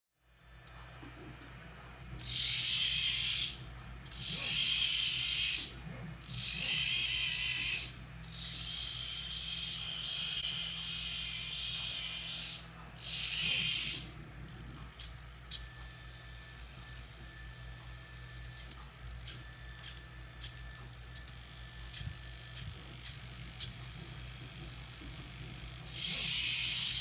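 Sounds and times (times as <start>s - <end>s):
servo motors whirring: 2.2s - 27.0s.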